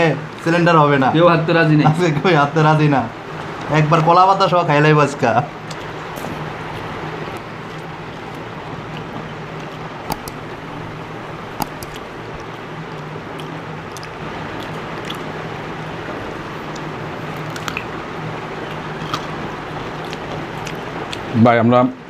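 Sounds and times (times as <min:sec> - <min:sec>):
steady hiss: 0:00.0 - 0:21.9
faint low hum: 0:00.0 - 0:22.0
squishing and chewing: 0:05.6 - 0:21.4.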